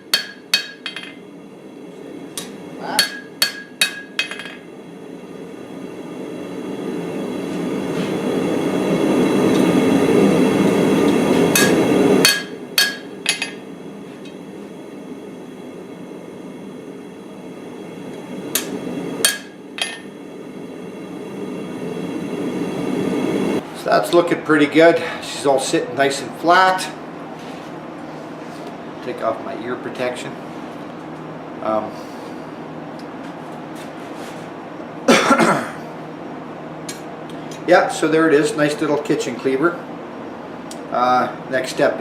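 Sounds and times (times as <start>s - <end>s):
hammer striking steel on anvil: 0.0s - 1.2s, 2.4s - 4.6s, 11.5s - 13.6s, 18.5s - 20.1s.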